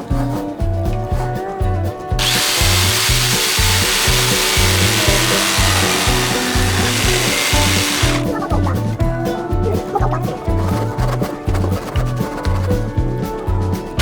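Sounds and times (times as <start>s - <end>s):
background music with steady beat: 0.0s - 14.0s
power tool hissing on wood: 2.2s - 8.3s.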